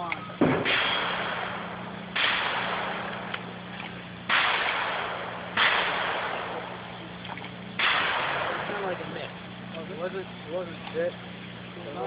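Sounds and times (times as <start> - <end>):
pistol shots: 0.4 - 7.0, 7.8 - 9.2.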